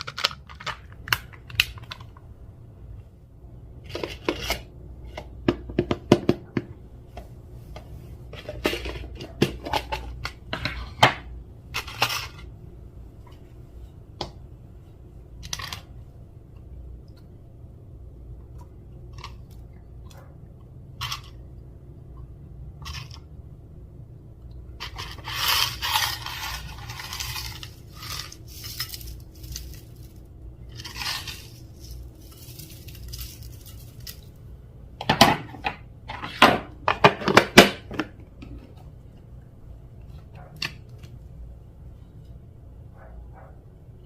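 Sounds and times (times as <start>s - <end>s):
slime scraping and crackling: 24.8s - 34.3s.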